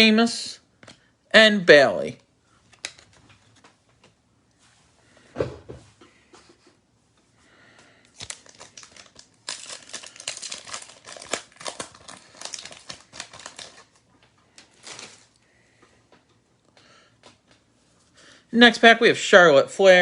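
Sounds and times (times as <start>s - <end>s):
foil wrapper crinkling and tearing: 8.1s - 15.4s.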